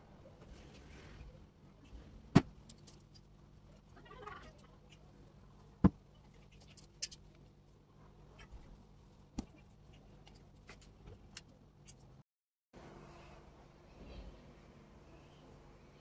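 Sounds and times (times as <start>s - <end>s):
faint low hum: 12.8s - 16.0s.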